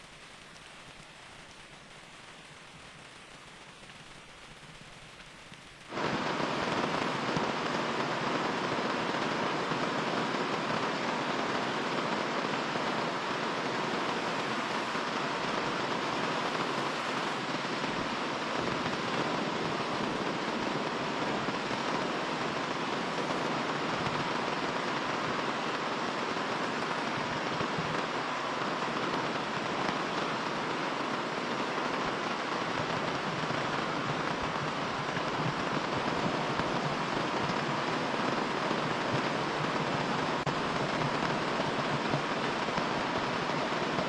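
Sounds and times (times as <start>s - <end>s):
steady rain hissing: 0.0s - 44.0s.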